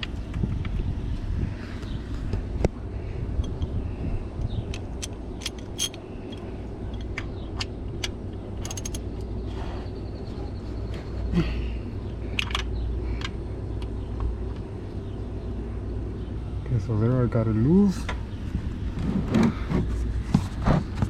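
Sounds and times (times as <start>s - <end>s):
steady low rumble: 0.0s - 21.0s
hand tool metal clicks: 4.4s - 9.0s, 12.3s - 13.4s.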